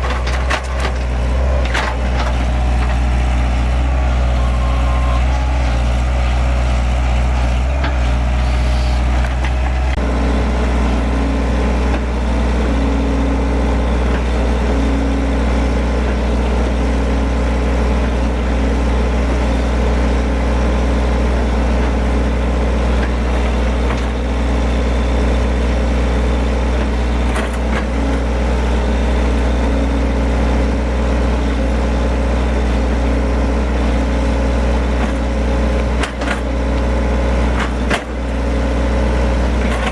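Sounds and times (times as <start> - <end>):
diesel engine droning: 0.0 - 39.9
higher drone: 2.1 - 11.2.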